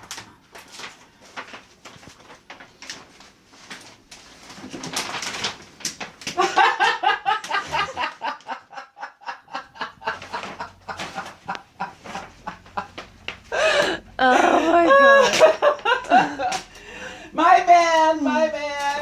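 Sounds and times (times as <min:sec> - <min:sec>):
paper and tape ripping: 0:00.0 - 0:06.4
woman laughing: 0:06.4 - 0:16.7.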